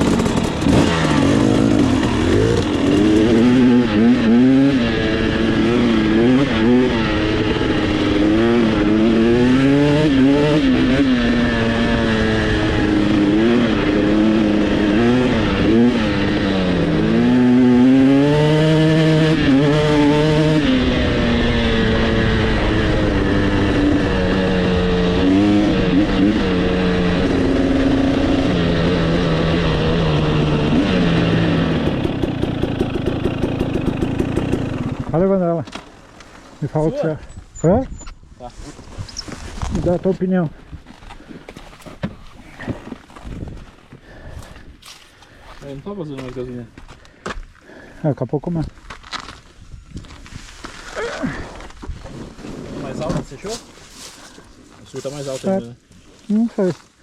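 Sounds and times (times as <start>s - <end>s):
two-stroke motorcycle engine revving: 0.0s - 35.5s.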